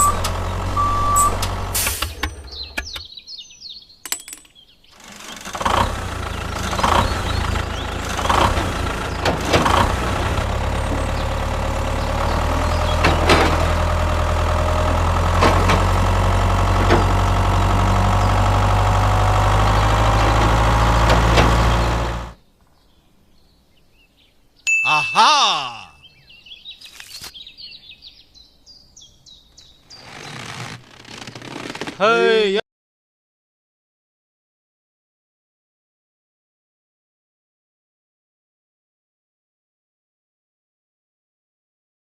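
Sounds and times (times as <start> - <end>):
engine idling with low rumble: 0.0 - 3.0, 5.0 - 22.4.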